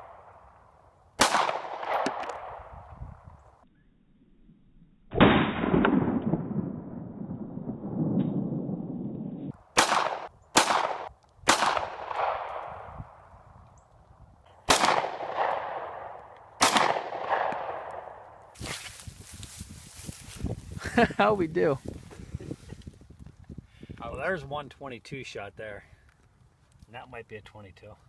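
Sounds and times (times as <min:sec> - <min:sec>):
gunshots with echo: 0:01.2 - 0:02.6, 0:09.8 - 0:12.8, 0:14.7 - 0:18.2.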